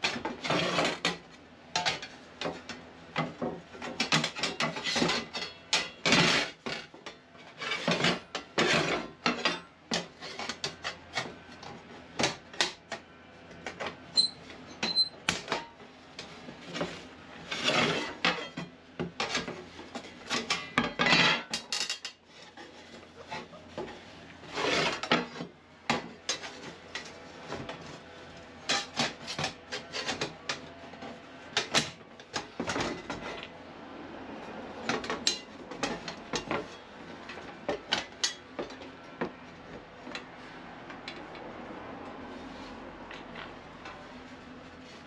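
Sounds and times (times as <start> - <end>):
steel plates scraping: 4.2 - 11.0, 16.7 - 23.6, 24.4 - 25.5.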